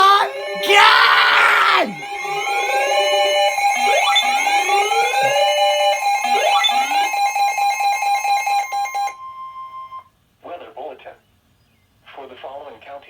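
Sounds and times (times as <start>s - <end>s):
two-tone alarm: 0.0s - 10.1s.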